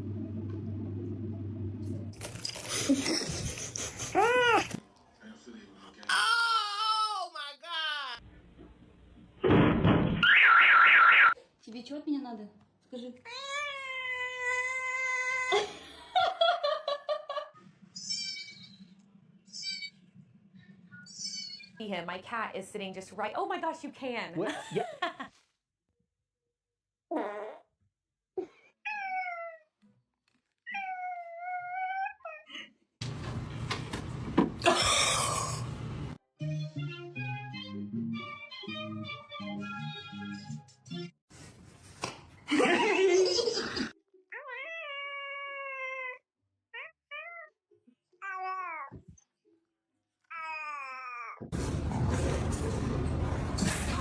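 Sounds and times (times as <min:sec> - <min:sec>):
cat meowing: 0:30.7 - 0:32.1, 0:44.3 - 0:46.2, 0:46.8 - 0:47.5.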